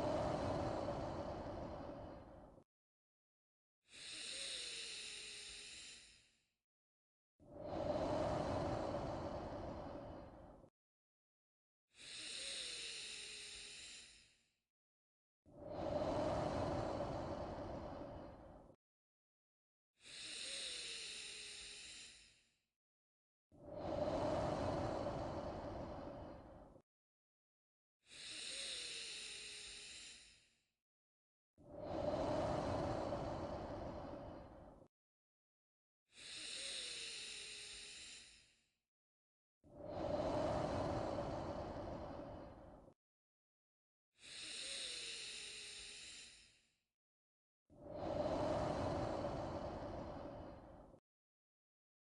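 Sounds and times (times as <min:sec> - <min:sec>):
slow human breathing: 0:00.0 - 0:02.6, 0:03.9 - 0:06.4, 0:07.5 - 0:10.7, 0:12.0 - 0:14.5, 0:15.5 - 0:18.8, 0:20.0 - 0:22.6, 0:23.6 - 0:26.8, 0:28.1 - 0:30.6, 0:31.6 - 0:34.9, 0:36.1 - 0:38.7, 0:39.7 - 0:43.0, 0:44.2 - 0:46.8, 0:47.7 - 0:51.0.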